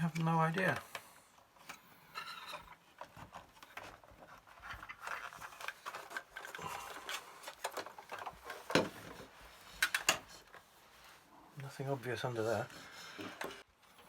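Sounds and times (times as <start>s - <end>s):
printer parts clicking and scraping: 9.8s - 10.5s.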